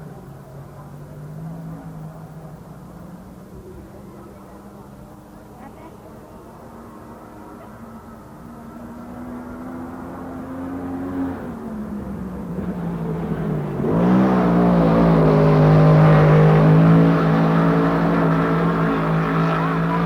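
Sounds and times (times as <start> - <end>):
race car engine at speed: 0.0 - 20.0.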